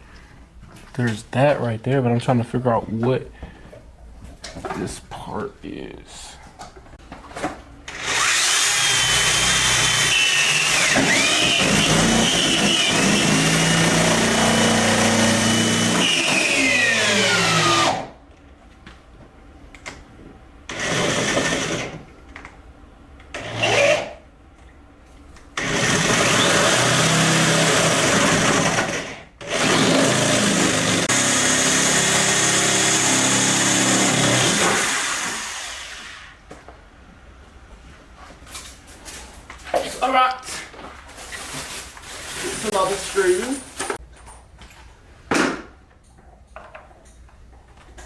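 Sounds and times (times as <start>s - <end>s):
cordless drill running: 7.9s - 18.1s, 20.7s - 21.9s, 25.6s - 36.3s.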